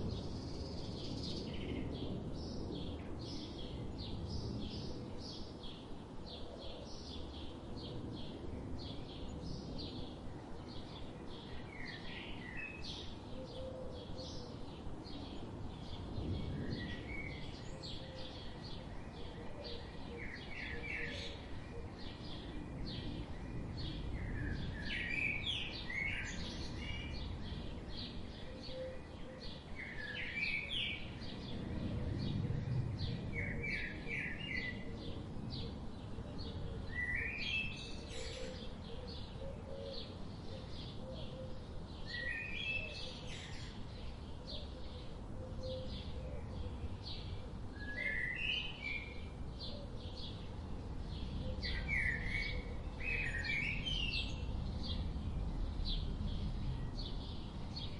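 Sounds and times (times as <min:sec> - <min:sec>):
low background noise: 0:00.0 - 0:57.9.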